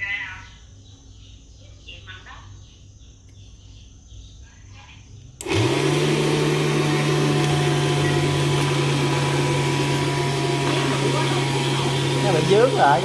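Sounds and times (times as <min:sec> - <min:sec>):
vacuum cleaner motor running: 0:05.4 - 0:13.0.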